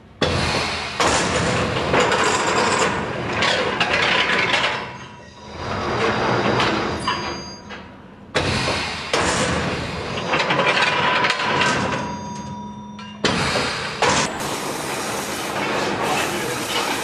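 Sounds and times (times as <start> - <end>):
welding machine clatter and hiss: 0.2 - 4.8, 8.4 - 11.6, 13.3 - 17.0.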